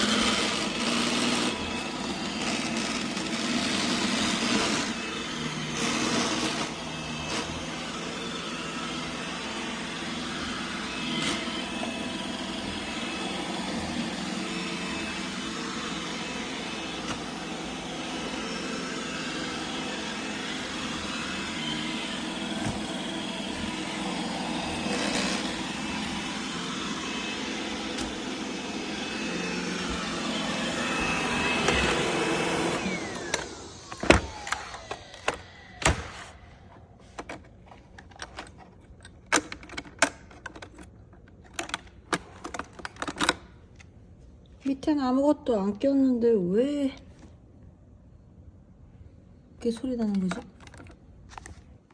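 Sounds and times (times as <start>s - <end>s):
robot vacuum motor whine: 0.0s - 36.5s.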